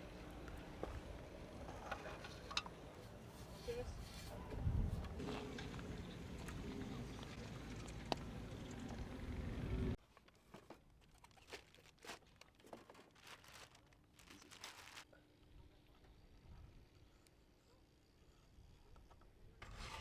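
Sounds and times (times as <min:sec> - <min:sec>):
small clicks of bike parts: 0:01.8 - 0:02.8
wind noise on microphone: 0:03.8 - 0:05.2
packaging crinkling and tearing: 0:11.0 - 0:15.1.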